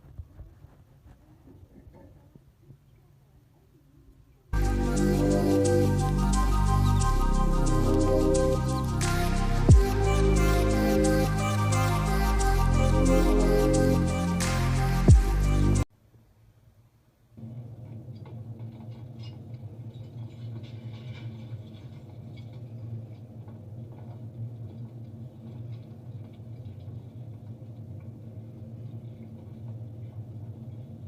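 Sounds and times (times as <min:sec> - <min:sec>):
steady low hum: 0:04.6 - 0:15.9.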